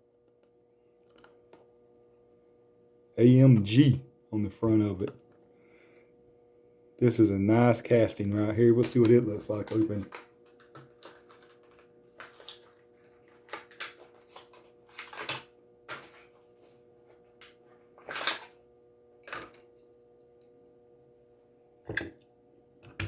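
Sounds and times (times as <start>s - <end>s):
packaging clicks and crinkles: 8.8s - 16.4s, 17.4s - 18.6s.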